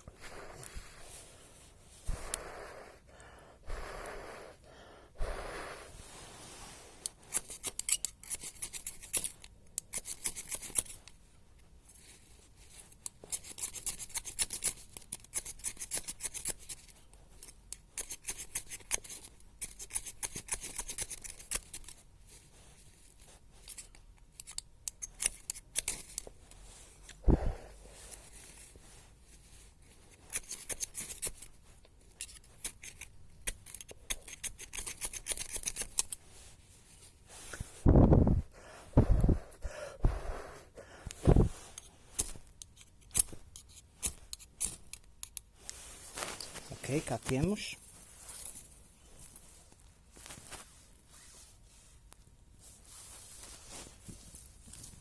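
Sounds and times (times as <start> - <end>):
striker scraping ferrocerium rod: 7.0 - 11.1
paper rustling: 45.7 - 51.5.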